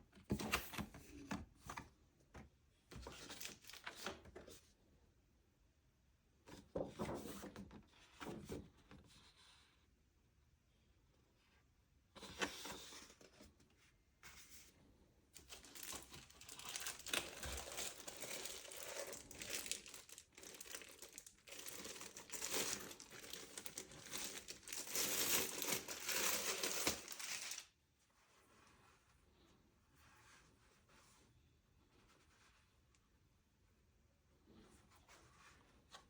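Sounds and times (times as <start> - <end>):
packaging wrap crinkling and tearing: 15.5 - 27.7.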